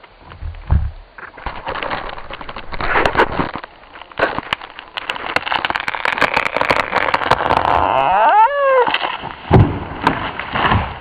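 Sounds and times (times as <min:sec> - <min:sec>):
tree falling with wood cracking: 0:00.4 - 0:11.0.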